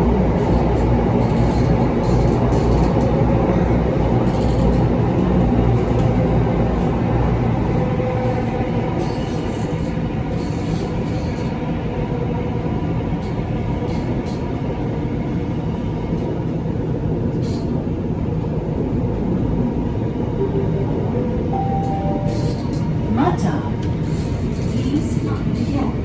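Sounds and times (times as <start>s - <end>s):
train wheels and motors rumbling: 0.0s - 20.2s.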